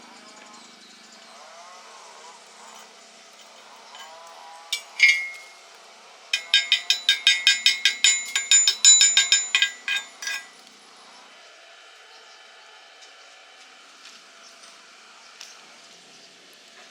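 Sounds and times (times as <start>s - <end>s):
hammer striking steel: 3.9s - 4.2s, 4.8s - 5.6s, 6.4s - 10.5s.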